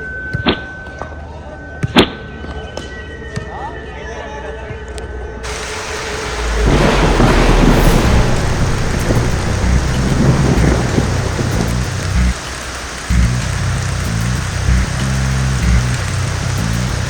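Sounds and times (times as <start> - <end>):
heavy rain: 5.4 - 17.0
thunder rumbling: 5.4 - 17.0.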